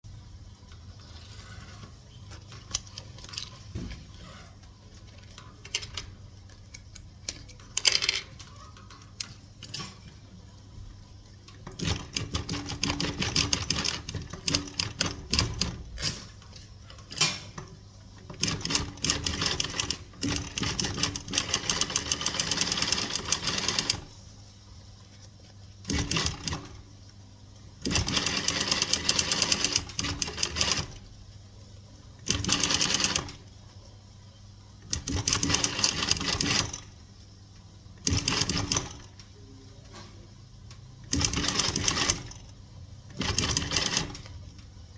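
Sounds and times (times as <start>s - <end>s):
sewing machine stitching: 18.3s - 24.1s, 25.8s - 26.8s, 27.8s - 31.0s, 32.2s - 33.4s, 34.9s - 36.9s, 38.0s - 39.1s, 41.1s - 42.5s, 43.1s - 44.3s.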